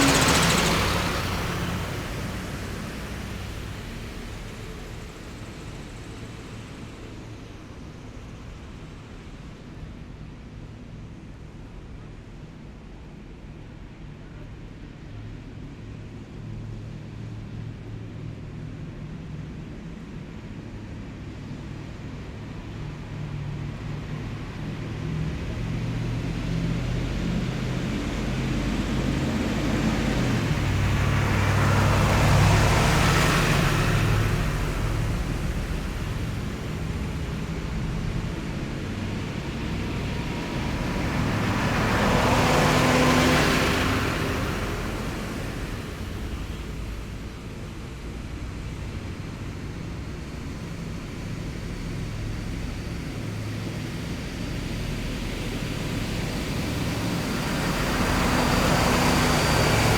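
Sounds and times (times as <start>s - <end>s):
heavy vehicles driving past: 0.0s - 9.6s, 21.6s - 59.9s.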